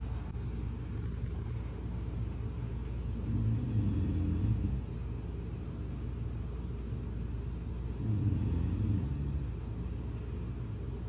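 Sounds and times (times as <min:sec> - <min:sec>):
steady low rumble: 0:00.0 - 0:11.0
person snoring: 0:03.1 - 0:04.9, 0:08.0 - 0:09.6.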